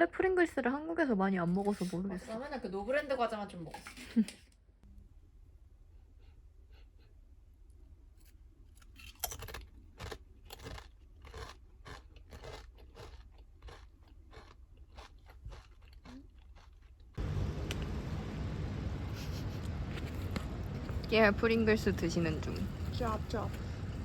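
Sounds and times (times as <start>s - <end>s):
crunching potato crisps: 8.8s - 17.2s.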